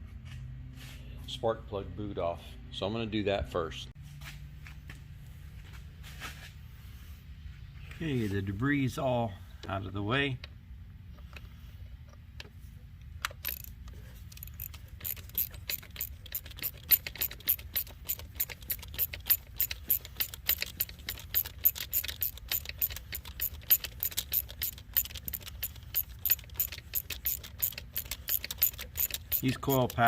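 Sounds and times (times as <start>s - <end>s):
socket ratchet clicking: 12.1s - 30.0s.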